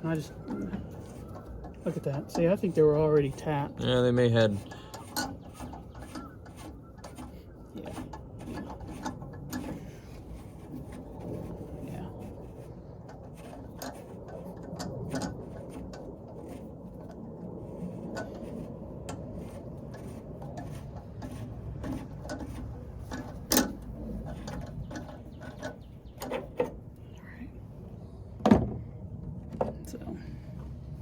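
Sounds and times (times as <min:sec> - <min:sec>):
metal scraping: 0:00.0 - 0:27.0.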